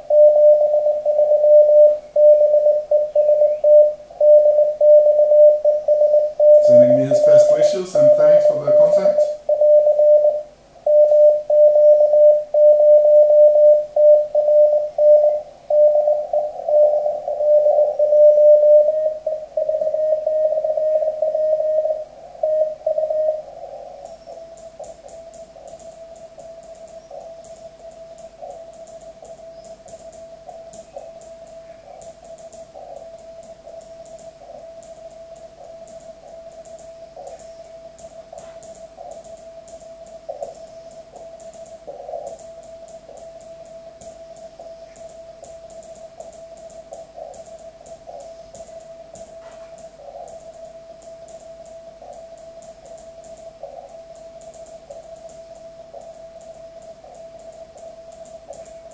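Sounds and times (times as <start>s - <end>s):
morse code tone: 0.0s - 58.9s
radio hiss: 6.4s - 11.9s, 46.0s - 51.0s.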